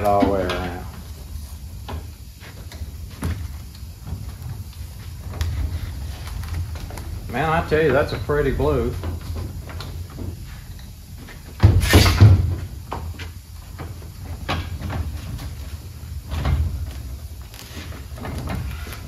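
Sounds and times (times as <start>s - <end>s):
metal cabinet sliding clatter: 11.6s - 12.8s.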